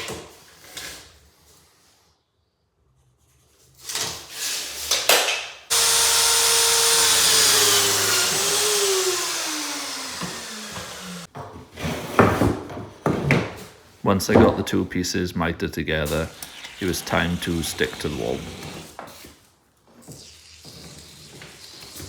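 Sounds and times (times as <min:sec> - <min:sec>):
electric mitre saw motor: 0:05.7 - 0:11.3, 0:16.3 - 0:18.9.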